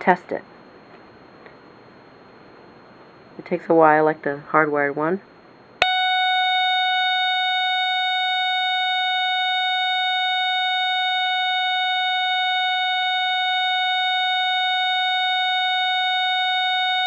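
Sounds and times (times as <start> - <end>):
smoke detector alarm buzz: 5.8 - 17.0.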